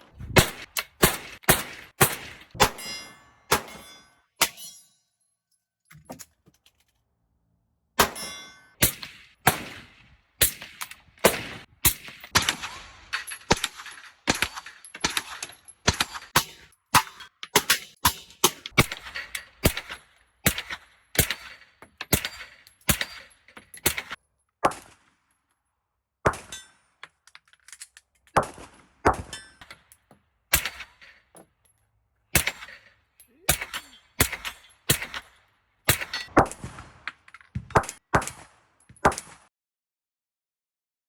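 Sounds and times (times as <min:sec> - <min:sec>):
pistol shots: 0:00.3 - 0:02.9, 0:08.0 - 0:16.6, 0:28.4 - 0:29.4, 0:33.5 - 0:35.3.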